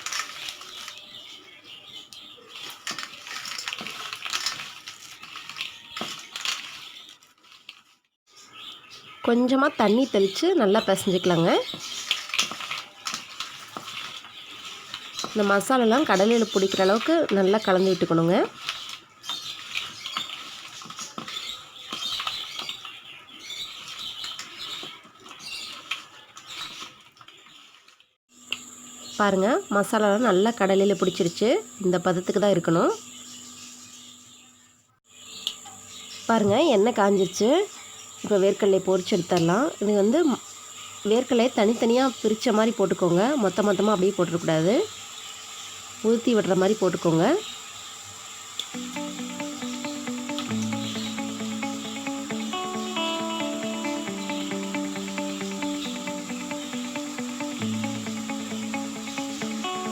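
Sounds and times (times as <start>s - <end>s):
sticky rustling of mixing by hand: 2.2s - 8.4s, 9.7s - 28.0s
hand mixing nuts in paste: 10.9s - 22.7s.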